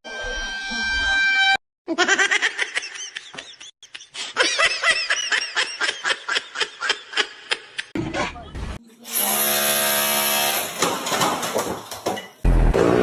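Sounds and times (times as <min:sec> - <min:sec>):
person laughing: 0:01.9 - 0:08.5.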